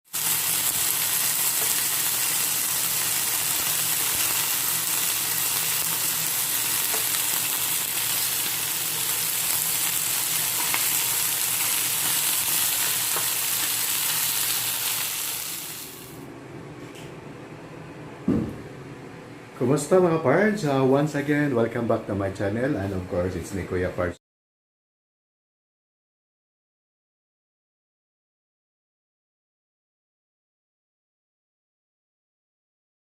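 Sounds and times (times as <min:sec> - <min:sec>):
food sizzling in hot oil: 0:00.1 - 0:16.2.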